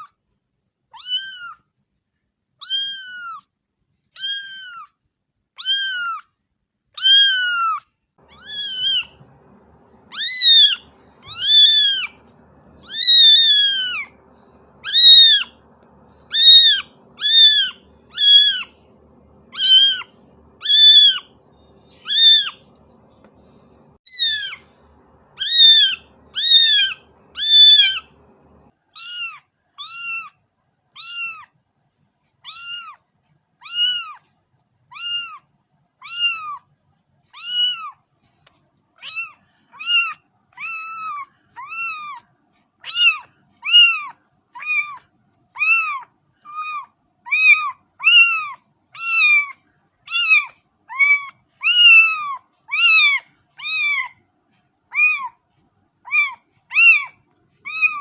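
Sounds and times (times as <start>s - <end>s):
kitten meowing: 1.0s - 1.6s, 2.6s - 3.4s, 4.2s - 4.9s, 5.6s - 6.2s, 7.0s - 30.3s, 31.0s - 31.5s, 32.5s - 33.0s, 33.6s - 34.2s, 34.9s - 35.4s, 36.0s - 36.6s, 37.4s - 38.0s, 39.0s - 42.2s, 42.8s - 45.0s, 45.6s - 54.1s, 54.9s - 55.3s, 56.1s - 57.1s, 57.7s - 58.0s.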